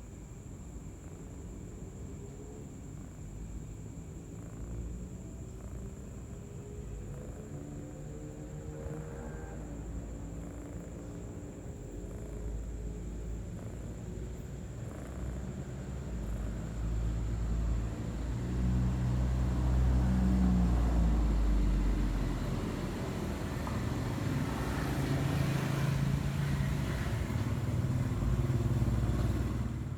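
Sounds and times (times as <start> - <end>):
road vehicles passing: 4.7 - 29.9.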